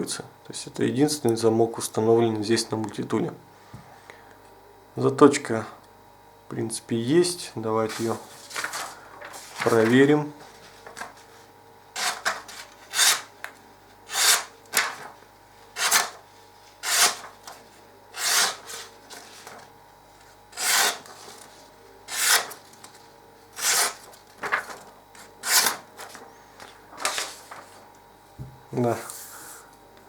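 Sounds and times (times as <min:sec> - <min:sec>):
knife blade cutting strokes: 0:12.9 - 0:13.3, 0:14.1 - 0:14.5, 0:15.8 - 0:16.2, 0:16.8 - 0:17.2, 0:18.2 - 0:18.8, 0:20.6 - 0:21.1, 0:22.1 - 0:22.6.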